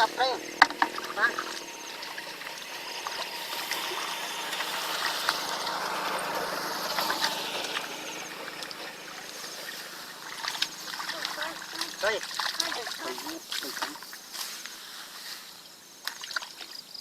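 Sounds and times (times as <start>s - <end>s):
water trickling: 0.0s - 14.8s, 15.8s - 17.0s
small clicks and splashes: 6.8s - 14.8s, 16.0s - 16.9s.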